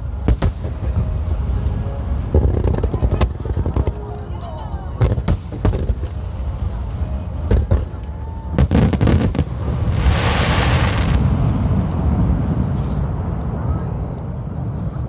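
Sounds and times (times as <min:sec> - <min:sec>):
fireworks booming and banging: 0:00.0 - 0:04.2, 0:05.0 - 0:14.6
fireworks crackling hiss: 0:08.7 - 0:11.9.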